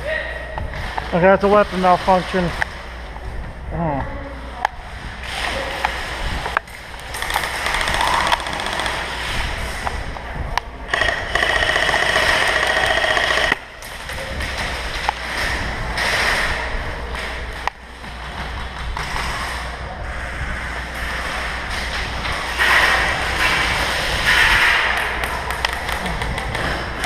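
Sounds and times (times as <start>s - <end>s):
clicks and handling noise: 5.8s - 19.7s, 21.0s - 27.0s
airsoft gun full-auto burst: 7.2s - 9.2s, 10.9s - 13.6s.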